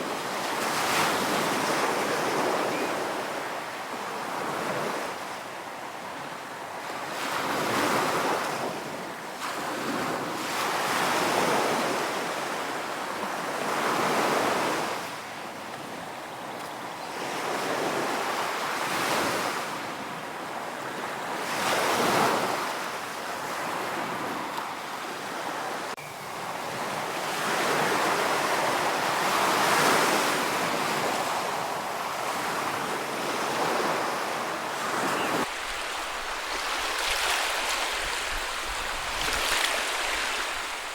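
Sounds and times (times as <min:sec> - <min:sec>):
waves breaking on a beach: 0:00.0 - 0:40.9.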